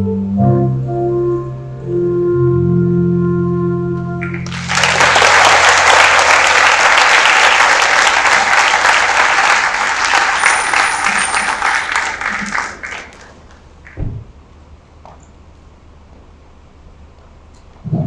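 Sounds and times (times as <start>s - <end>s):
audience clapping: 4.2s - 14.0s.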